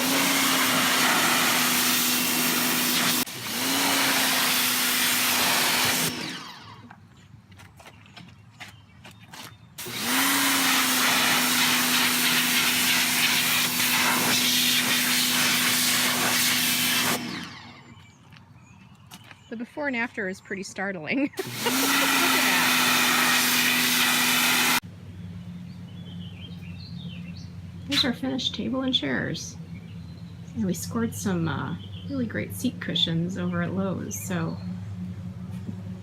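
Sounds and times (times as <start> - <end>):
electric power tool motor whining: 0.0 - 7.1, 9.8 - 18.2, 21.4 - 24.8.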